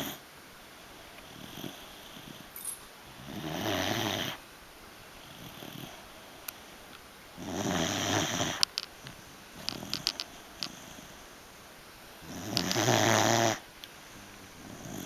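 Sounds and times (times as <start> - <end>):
dog snoring: 0.0 - 0.2, 1.2 - 2.5, 3.1 - 4.4, 5.2 - 6.1, 7.4 - 8.6, 9.6 - 11.2, 12.2 - 15.0.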